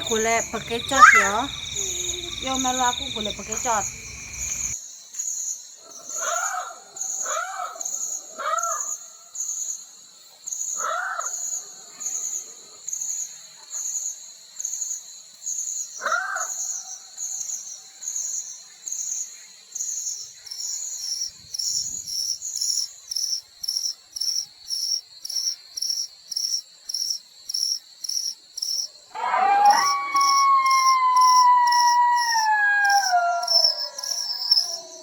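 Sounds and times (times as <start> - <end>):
long howl: 0.0 - 4.7, 29.1 - 35.0
crickets chirping: 0.0 - 5.5, 16.7 - 35.0.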